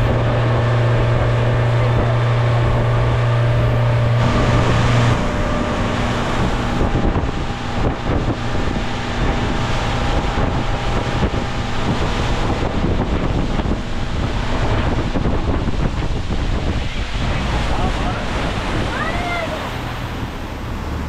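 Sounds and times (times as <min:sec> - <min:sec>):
motorboat engine humming: 0:00.0 - 0:21.0
water washing past hull: 0:00.0 - 0:21.0
wind buffeting microphone: 0:00.0 - 0:21.0.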